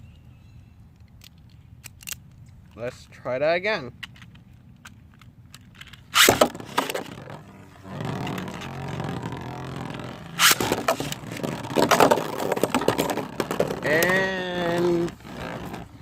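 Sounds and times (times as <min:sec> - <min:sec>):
spinning tops launched: 0:06.1 - 0:13.3
spinning tops rattling whir: 0:06.2 - 0:15.7
spinning tops clashing: 0:08.1 - 0:12.1.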